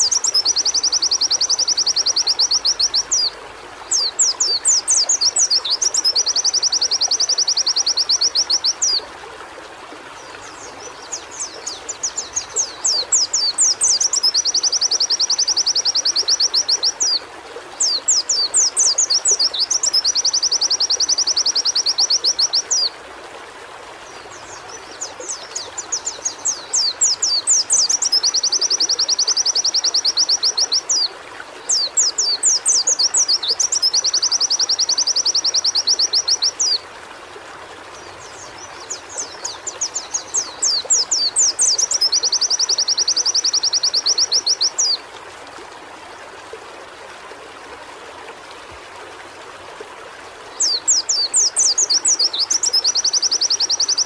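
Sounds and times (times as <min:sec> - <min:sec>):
bird singing with trills: 0:50.6 - 0:54.0.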